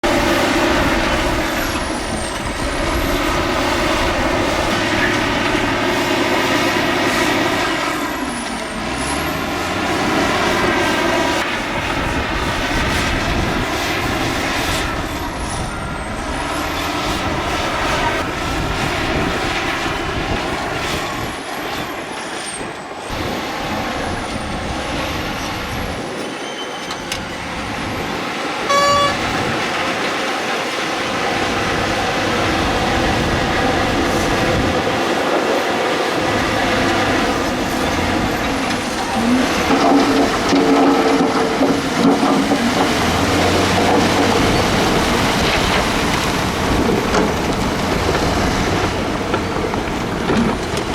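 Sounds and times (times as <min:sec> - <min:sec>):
heavy diesel engines working: 0:00.0 - 0:50.9
short beep: 0:28.7 - 0:29.3.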